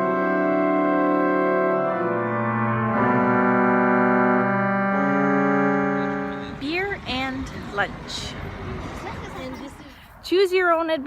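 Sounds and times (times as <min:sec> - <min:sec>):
church organ chords: 0:00.0 - 0:08.2.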